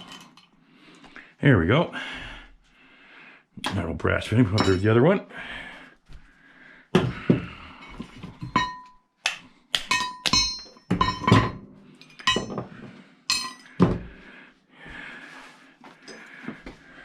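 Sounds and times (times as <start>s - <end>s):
metal parts clanking: 9.9s - 12.7s.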